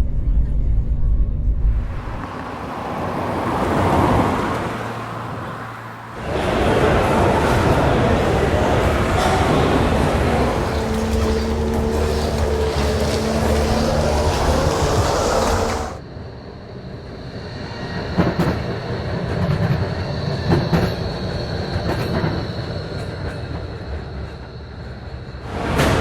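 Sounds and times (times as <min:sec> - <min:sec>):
train rumble: 0:00.0 - 0:26.0
train running noise with hum: 0:00.0 - 0:26.0
train wheels clacking on rails: 0:06.2 - 0:16.0, 0:18.0 - 0:26.0.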